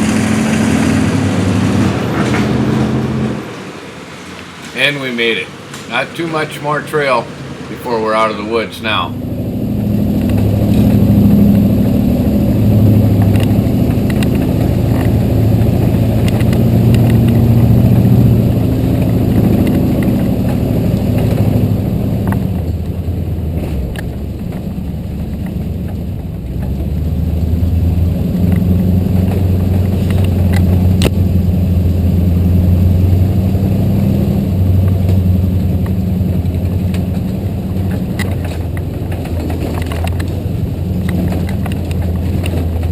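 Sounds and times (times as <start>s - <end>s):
truck engine under load: 0.0s - 42.9s.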